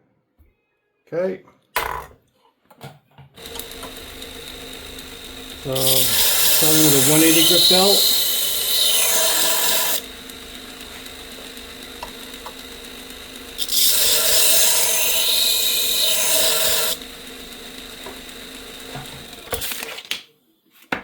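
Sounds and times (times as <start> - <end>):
machine humming: 3.4 - 19.7
knife grinding on belt sander: 3.4 - 20.0.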